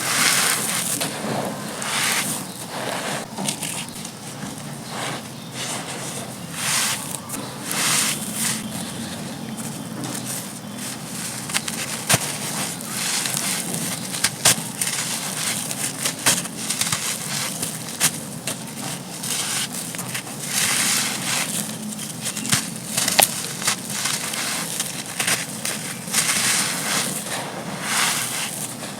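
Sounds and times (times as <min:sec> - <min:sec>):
crackle of grit: 0:00.0 - 0:28.9
cement chunks crumbling and crunching: 0:06.8 - 0:28.9.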